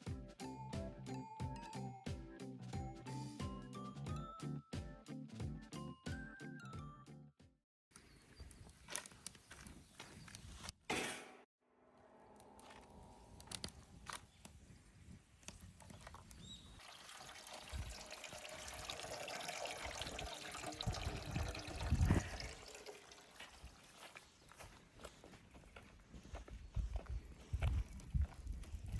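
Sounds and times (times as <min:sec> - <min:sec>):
liquid pouring into container: 0:16.0 - 0:24.2.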